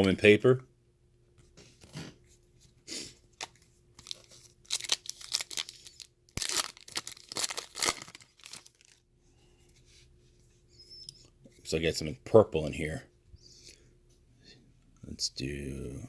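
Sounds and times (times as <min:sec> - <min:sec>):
wrapper tearing and crinkling: 0:03.4 - 0:09.0.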